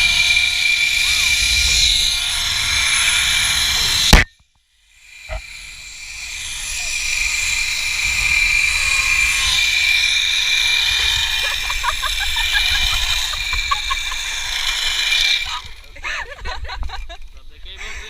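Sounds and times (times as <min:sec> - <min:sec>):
low wind rumble: 0:05.6 - 0:18.0.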